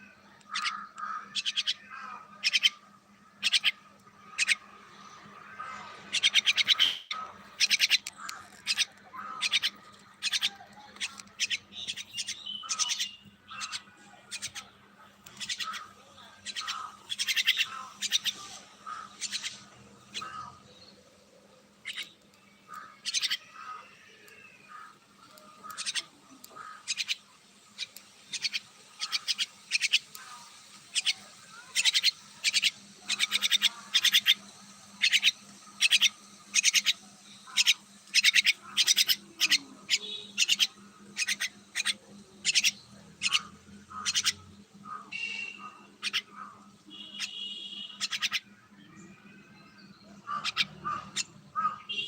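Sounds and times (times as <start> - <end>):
myna bird harsh calls: 0.0 - 52.0.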